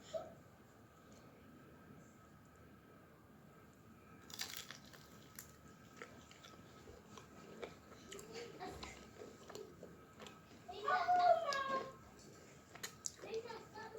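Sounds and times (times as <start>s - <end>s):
biting into chicken wings: 4.3s - 8.9s.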